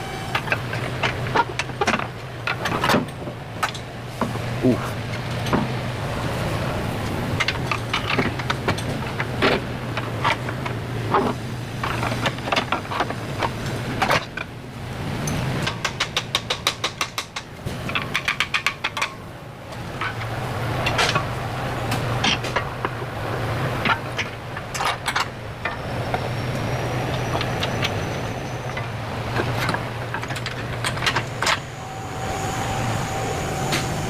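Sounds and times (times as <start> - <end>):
steady low hum: 19.3 - 34.0.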